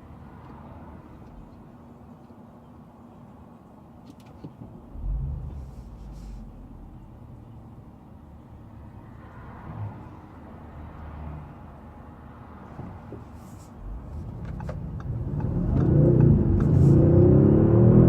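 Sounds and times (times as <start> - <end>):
car engine accelerating: 4.9 - 7.6, 13.8 - 18.0.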